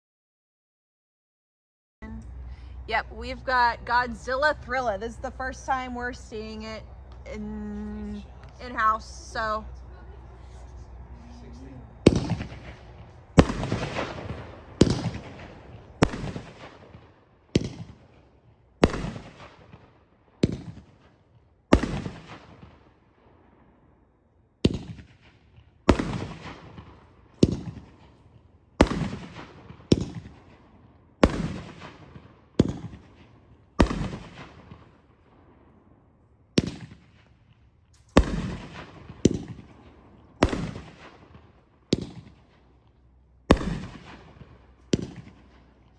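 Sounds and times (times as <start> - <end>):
firework bangs: 3.5 - 23.8, 24.6 - 35.8, 36.6 - 42.8, 43.5 - 45.9
firework crackle: 12.0 - 17.0.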